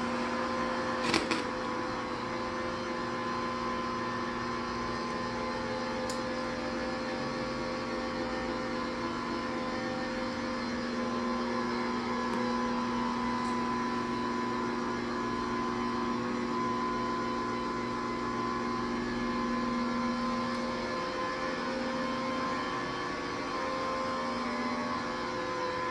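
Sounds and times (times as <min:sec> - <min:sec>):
electric mop motor humming: 0:00.0 - 0:25.9.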